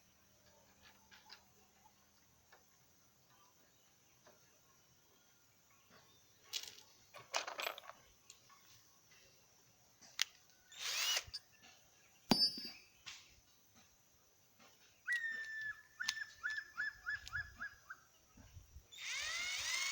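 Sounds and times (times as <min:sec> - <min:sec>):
power drill bursts: 0:10.7 - 0:11.4, 0:18.9 - 0:19.9
sharp metallic knock: 0:12.3 - 0:12.8.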